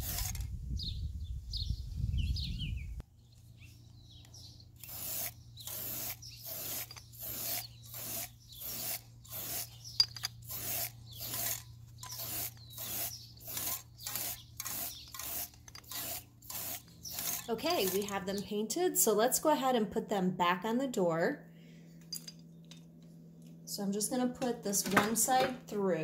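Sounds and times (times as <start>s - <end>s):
spray paint can bursts: 4.8s - 9.8s, 10.4s - 18.1s.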